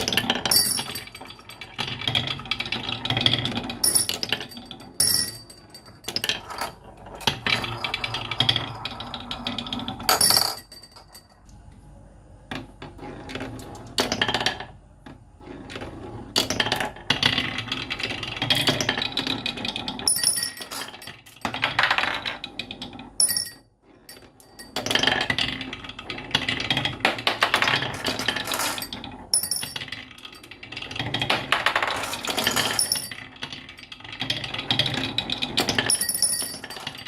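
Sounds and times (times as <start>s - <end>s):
marbles rattling down wooden tracks: 24.1s - 37.0s.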